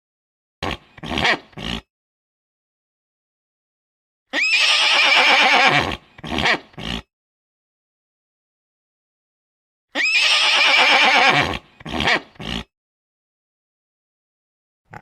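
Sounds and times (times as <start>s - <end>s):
horse whinnying: 0.6s - 1.9s, 4.3s - 7.1s, 9.9s - 12.7s.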